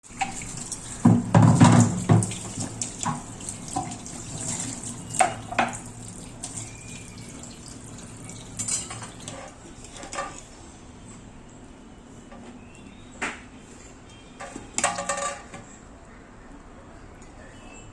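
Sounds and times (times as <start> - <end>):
running water splashing: 0.0 - 9.5
pots and pans clattering: 0.1 - 6.9, 8.5 - 10.4, 14.4 - 15.7.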